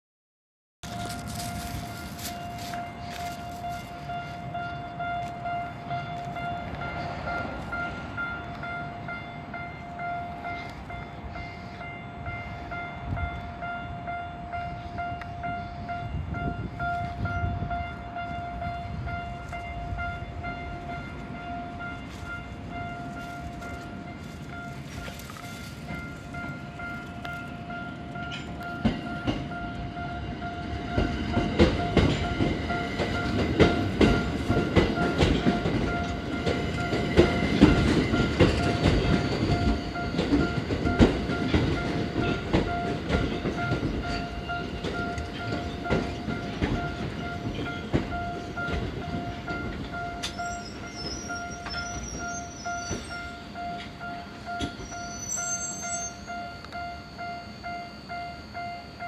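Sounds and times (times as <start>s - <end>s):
level-crossing alarm ringing: 0.8s - 59.0s
train wheels clacking over rails: 16.4s - 55.9s
high squeal: 50.2s - 53.7s, 54.6s - 57.0s.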